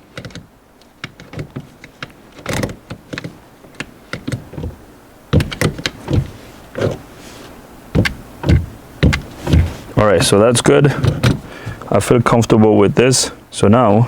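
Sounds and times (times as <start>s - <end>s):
gear shifter clicking and clunking: 0.0s - 7.1s, 7.9s - 11.9s.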